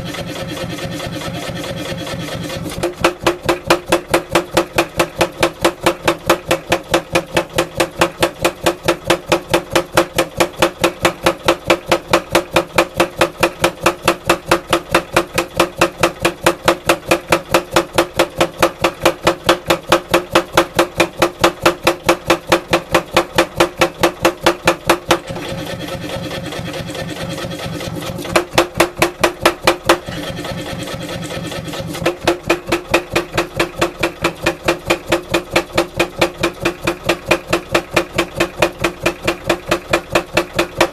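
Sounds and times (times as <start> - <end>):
machine running: 0.0 - 3.5, 25.2 - 40.9
power hammer striking steel: 0.0 - 40.9.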